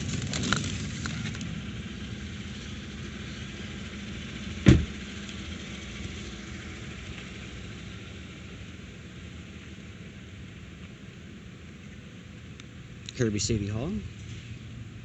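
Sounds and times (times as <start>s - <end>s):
vehicle engine idling: 0.0s - 15.0s
car door slamming: 4.6s - 5.0s.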